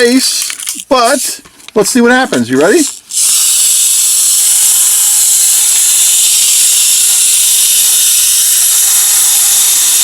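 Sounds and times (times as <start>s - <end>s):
wind-up toy motor whirring: 2.5s - 10.0s.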